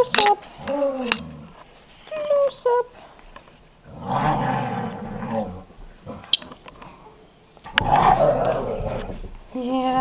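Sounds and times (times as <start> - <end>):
parrot growling grumble: 3.9 - 6.3, 7.8 - 9.2.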